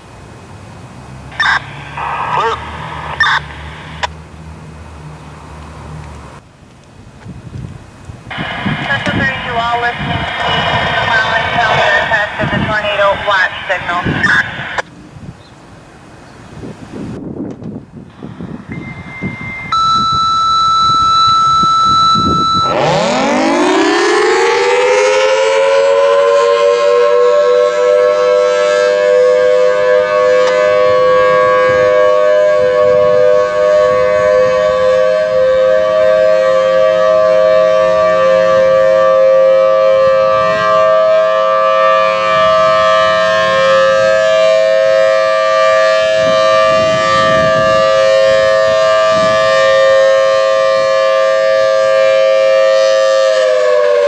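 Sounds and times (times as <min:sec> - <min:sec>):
radio tones: 0:01.4 - 0:04.1, 0:08.3 - 0:14.8
rotating siren two-note wail: 0:18.6 - 0:54.0.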